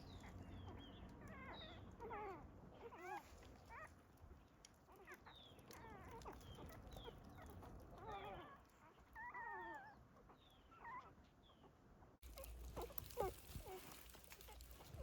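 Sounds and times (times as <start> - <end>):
puppies whining: 5.0 - 10.0, 10.6 - 11.2, 12.3 - 15.0.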